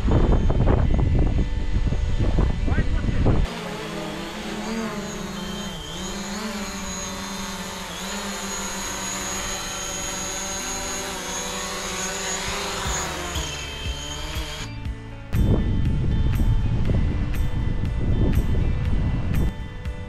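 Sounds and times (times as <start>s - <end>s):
drone propellers whining: 0.0s - 20.0s.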